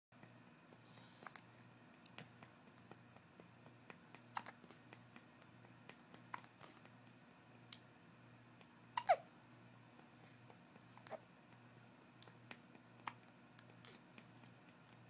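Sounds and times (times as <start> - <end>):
baby hiccupping: 4.1 - 4.7, 8.9 - 9.3.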